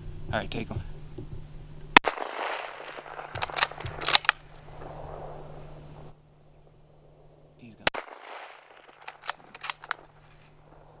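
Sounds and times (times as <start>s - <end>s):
gunshot: 2.0s - 5.7s, 7.8s - 11.0s
sharp clicks and knocks: 3.3s - 4.4s, 8.9s - 10.1s.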